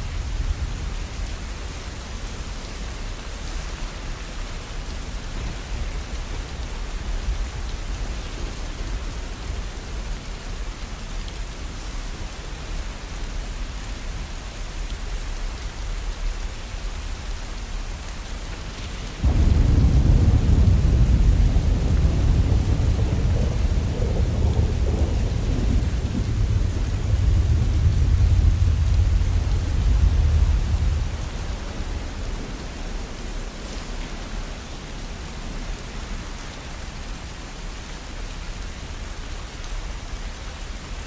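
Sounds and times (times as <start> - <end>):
low rumble of thunder: 0.0 - 3.5, 4.1 - 11.8, 19.1 - 35.8
rain falling: 0.0 - 41.0.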